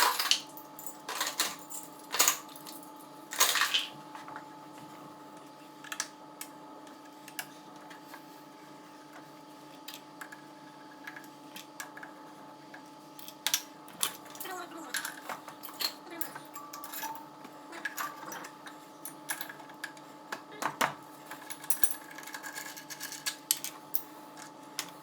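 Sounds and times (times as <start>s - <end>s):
metal tools clinking and rattling: 14.0s - 17.2s.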